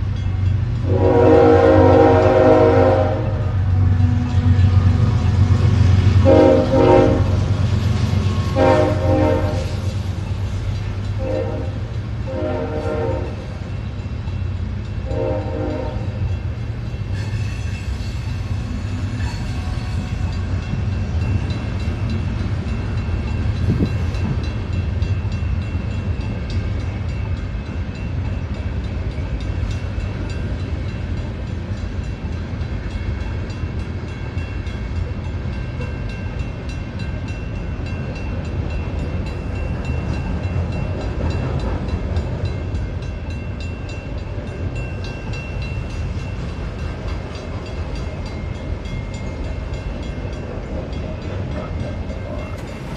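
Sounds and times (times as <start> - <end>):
freight cars rolling on rails: 0.0 - 52.9
locomotive rumble: 0.0 - 52.9
train air horn blasts: 0.8 - 7.5, 8.4 - 9.9, 11.2 - 13.5, 15.0 - 16.2.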